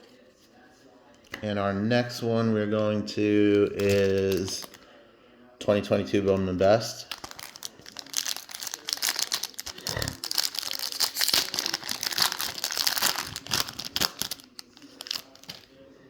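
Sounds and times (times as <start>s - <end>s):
foil wrapper tearing and crinkling: 3.7s - 4.8s, 7.0s - 15.7s.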